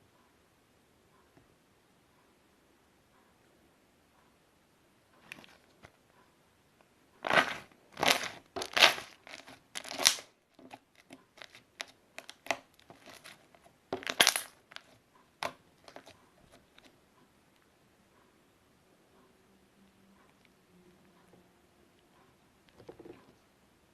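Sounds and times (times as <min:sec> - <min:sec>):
slime crackling when squeezed: 0:07.3 - 0:10.2.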